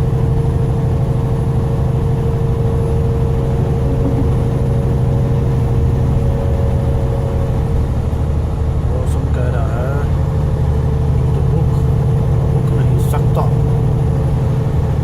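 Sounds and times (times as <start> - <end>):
constant hum: 0.0 - 15.0
diesel engine drone: 0.0 - 15.0
road noise: 0.0 - 15.0.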